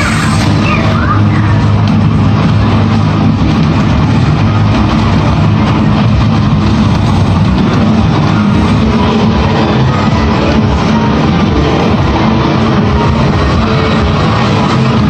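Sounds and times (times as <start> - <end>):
loud dense music: 0.0 - 15.0.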